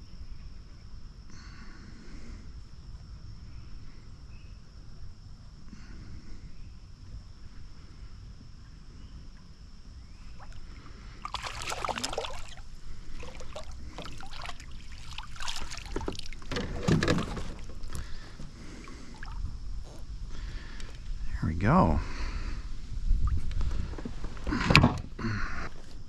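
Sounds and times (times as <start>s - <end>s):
water splashing against kayak: 10.3s - 19.5s.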